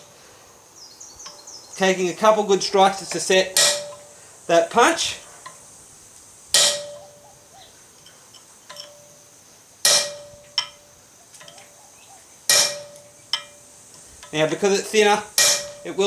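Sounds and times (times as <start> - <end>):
metallic ringing: 1.3 - 5.7, 6.5 - 11.8, 12.5 - 16.0
hammer blows on metal: 2.0 - 5.7, 6.5 - 7.5, 9.8 - 11.6, 12.5 - 16.0.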